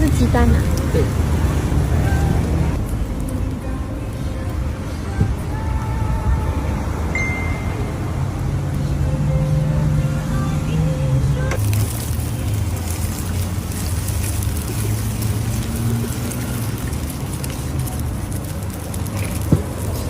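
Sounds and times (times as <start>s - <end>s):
food sizzling in hot oil: 11.6s - 20.0s.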